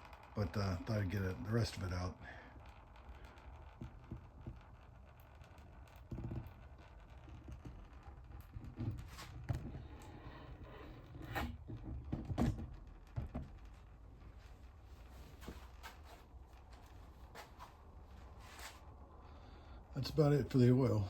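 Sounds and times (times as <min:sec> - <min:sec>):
low steady rumble: 0:00.0 - 0:21.0
knocks and clunks: 0:08.5 - 0:13.6.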